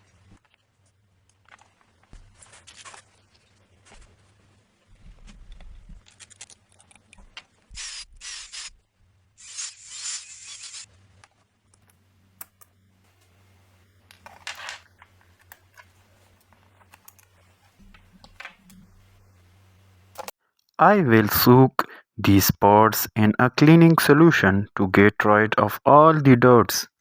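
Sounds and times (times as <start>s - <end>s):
short hissing bursts: 7.8s - 8.8s, 9.4s - 10.9s.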